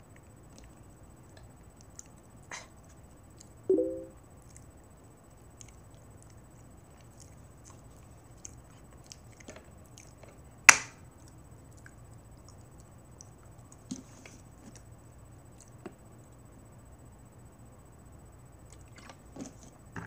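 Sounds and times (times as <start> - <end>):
low room hum: 0.0 - 20.0.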